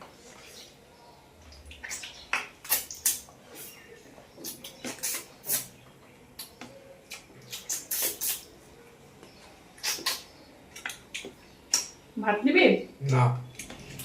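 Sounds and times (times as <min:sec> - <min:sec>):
person chewing with lip smacks: 0:04.4 - 0:05.7, 0:06.4 - 0:08.5, 0:09.8 - 0:11.8.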